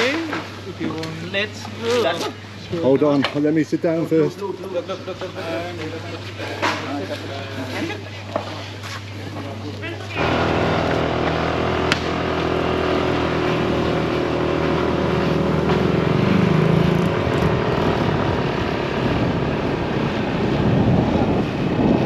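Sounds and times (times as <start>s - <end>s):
small motorcycle engine accelerating: 10.2s - 22.0s
rushing wind noise: 16.1s - 22.0s.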